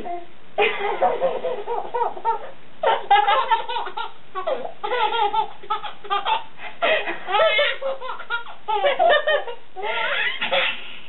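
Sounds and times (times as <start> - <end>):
baby belly-laughing: 0.7 - 11.0.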